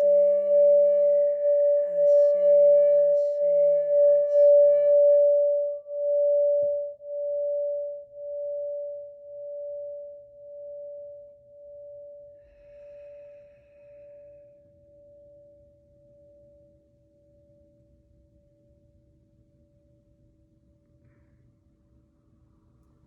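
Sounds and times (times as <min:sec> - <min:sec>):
singing bowl ringing: 0:00.0 - 0:12.4.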